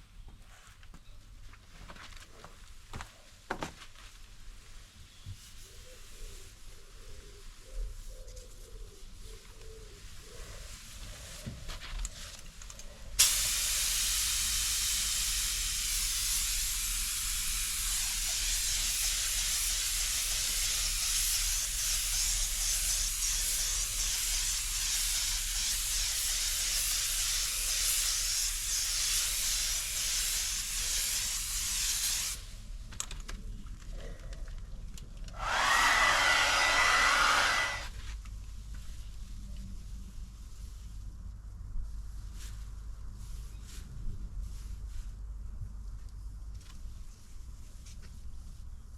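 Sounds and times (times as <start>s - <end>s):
compressed air hissing from spray gun: 13.2s - 32.6s, 35.4s - 37.9s
air blast with thin whistle: 35.4s - 37.9s.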